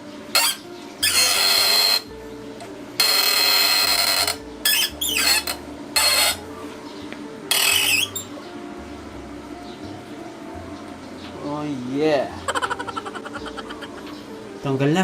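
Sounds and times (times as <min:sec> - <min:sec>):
metal squeals: 0:00.3 - 0:02.1, 0:03.0 - 0:06.5, 0:07.5 - 0:08.4.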